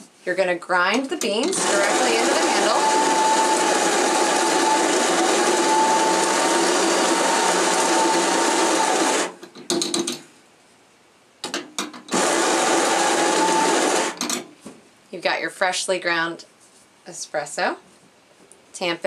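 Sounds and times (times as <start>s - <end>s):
coffee grinder whirring: 1.4s - 9.4s, 12.1s - 14.2s.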